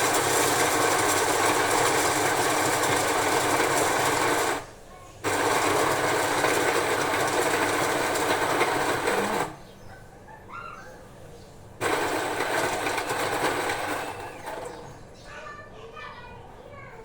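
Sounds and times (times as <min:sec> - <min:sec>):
coffee machine whirring: 0:00.0 - 0:09.8, 0:11.8 - 0:15.1.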